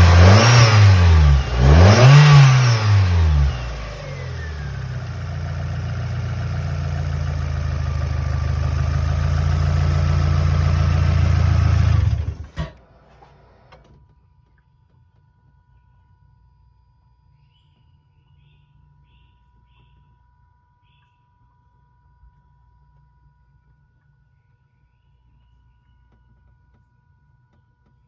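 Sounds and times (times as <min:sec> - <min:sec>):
car engine revving and idling: 0:00.0 - 0:13.7.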